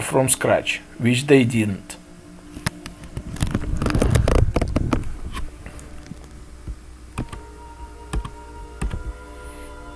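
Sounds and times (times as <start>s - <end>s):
quiet music with held notes: 5.0s - 9.9s.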